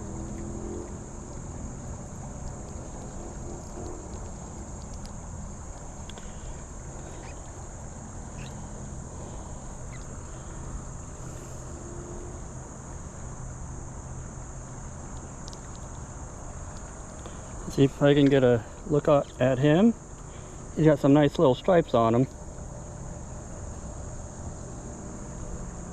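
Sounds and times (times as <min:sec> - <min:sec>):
high-pitched insect drone: 0:00.0 - 0:25.9.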